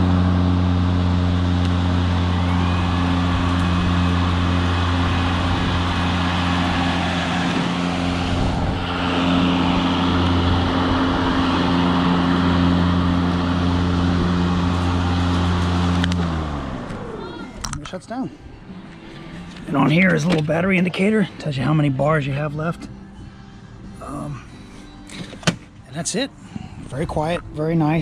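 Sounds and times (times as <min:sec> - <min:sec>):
lawn mower motor humming: 0:00.0 - 0:17.8.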